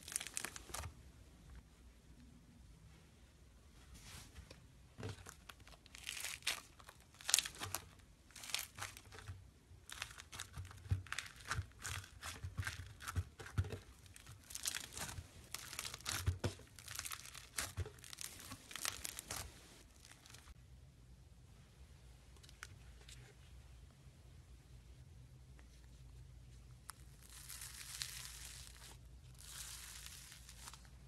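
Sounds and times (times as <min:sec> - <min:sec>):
foam slime crackling: 0:00.0 - 0:00.8, 0:05.3 - 0:09.3, 0:09.9 - 0:20.6, 0:26.9 - 0:30.9.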